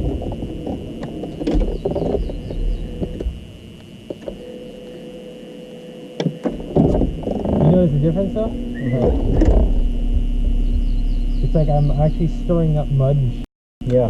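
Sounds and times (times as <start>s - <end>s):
boat knocks and low rumble: 0.0s - 3.5s, 6.2s - 7.8s, 8.6s - 12.0s
high-pitched whine: 0.0s - 14.0s.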